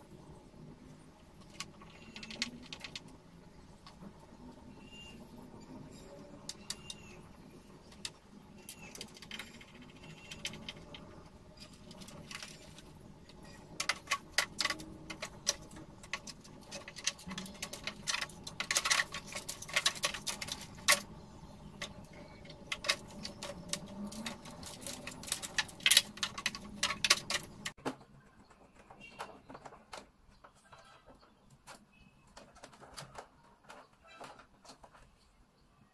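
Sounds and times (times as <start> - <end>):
plastic and metal parts clattering: 0.8 - 4.4, 5.7 - 35.3.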